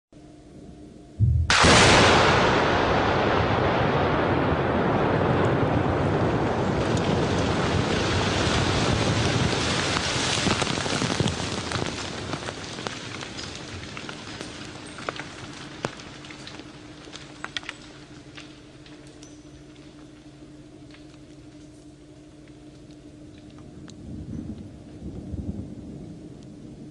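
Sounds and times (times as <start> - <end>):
rumbling roar of bomb blast: 1.2 - 11.8
falling debris pattering: 1.5 - 25.0.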